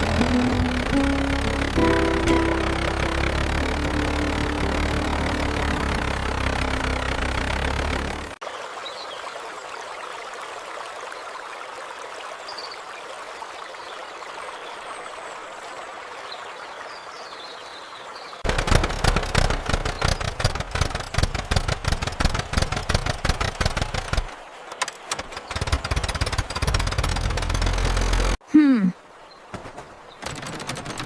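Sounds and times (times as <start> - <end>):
cartoon tractor engine chugging: 0.0 - 8.4, 18.4 - 28.4, 30.2 - 31.0.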